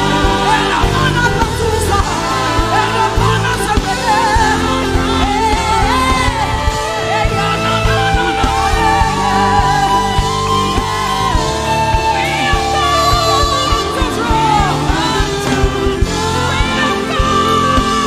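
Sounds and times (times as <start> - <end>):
low bass line: 0.0 - 18.0
person singing gospel: 0.0 - 18.0
sustained instrumental chords: 0.0 - 18.0.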